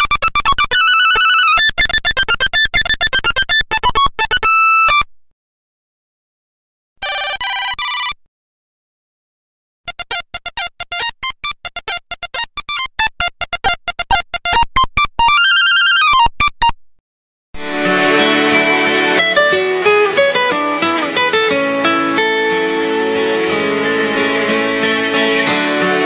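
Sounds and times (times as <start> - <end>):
monophonic ringtone beeps: 0.7 - 4.9.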